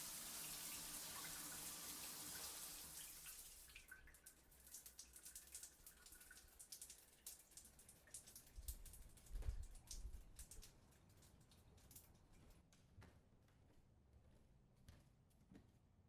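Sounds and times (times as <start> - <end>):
water drips: 0.0 - 12.2.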